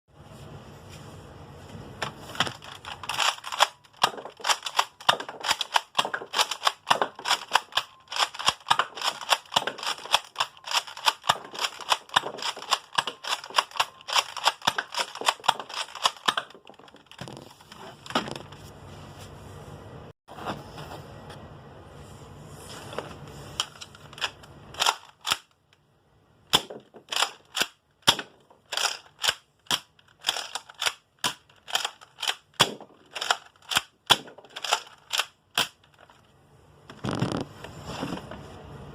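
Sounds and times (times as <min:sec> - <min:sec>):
toy blaster plastic clacks: 0:02.4 - 0:17.2, 0:26.6 - 0:36.2.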